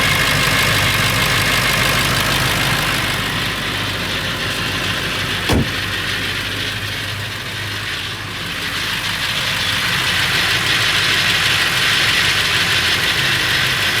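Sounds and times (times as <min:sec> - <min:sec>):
diesel engine idling with rattle: 0:00.0 - 0:14.0
low thump: 0:05.5 - 0:06.0.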